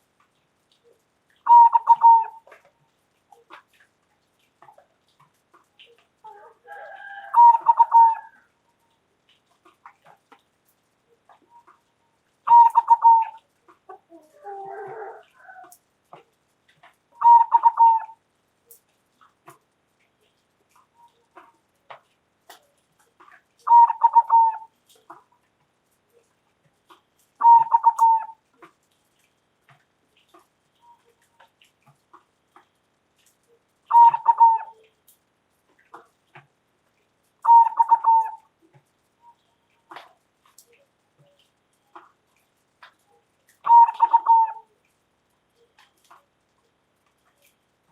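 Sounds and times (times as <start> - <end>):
quieter lower bird call: 1.4 - 2.5, 12.5 - 13.4, 17.2 - 18.2, 23.6 - 24.7, 27.4 - 28.4, 33.9 - 34.8, 37.4 - 38.5, 43.6 - 44.7
dove cooing: 1.5 - 2.7, 5.9 - 8.5, 12.5 - 15.8, 17.1 - 18.2, 23.7 - 24.7, 27.4 - 28.4, 33.9 - 34.9, 37.4 - 38.5, 43.6 - 44.8.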